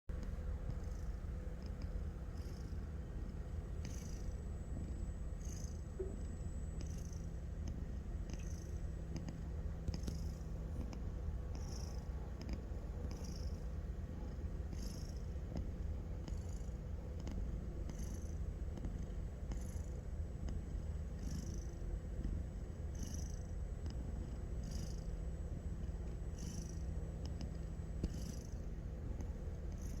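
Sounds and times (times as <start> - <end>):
cat snoring: 0.6 - 30.0.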